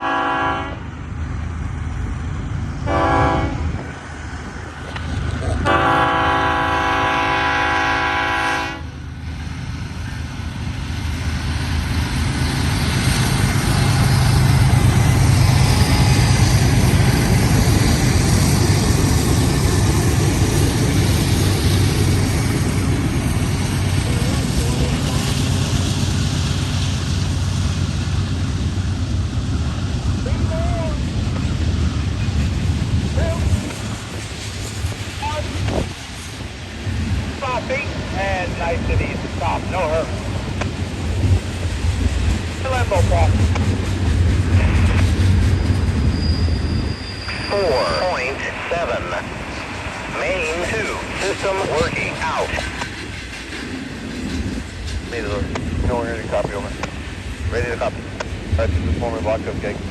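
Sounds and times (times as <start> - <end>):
locomotive air horn: 0.0 - 0.8, 2.9 - 3.7, 5.6 - 8.9
diesel locomotive engines droning: 0.0 - 59.9
wheels rumbling on rail: 0.0 - 59.9.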